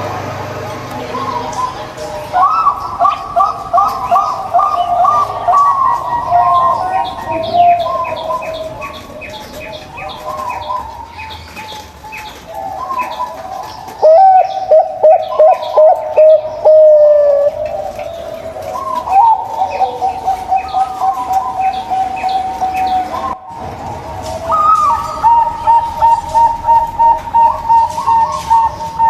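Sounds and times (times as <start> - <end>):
doves cooing: 0.0 - 29.0.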